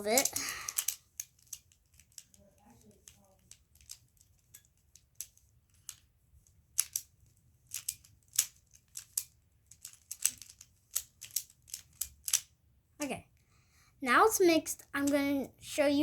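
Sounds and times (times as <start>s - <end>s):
plastic puzzle clicking: 0.0s - 7.1s, 7.7s - 12.5s.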